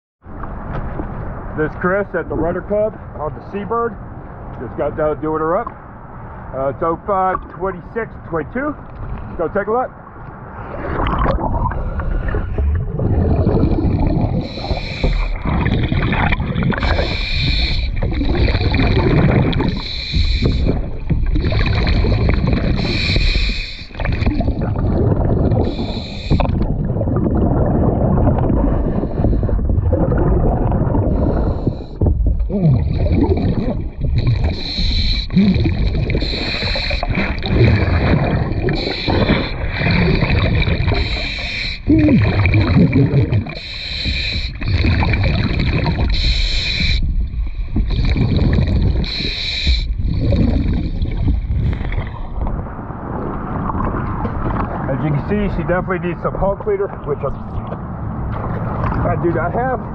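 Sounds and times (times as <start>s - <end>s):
underwater bubbles gurgling: 8.9s - 59.9s
regulator breathing hiss: 16.9s - 18.0s, 19.7s - 20.7s, 22.8s - 23.9s, 25.7s - 26.4s, 34.6s - 35.4s, 36.2s - 37.0s, 41.0s - 41.9s, 43.6s - 44.6s, 46.1s - 47.0s, 49.1s - 49.9s.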